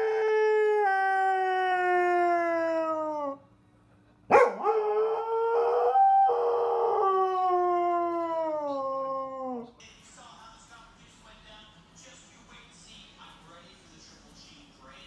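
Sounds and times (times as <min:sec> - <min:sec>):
dog howling: 0:00.0 - 0:03.4, 0:04.3 - 0:09.7.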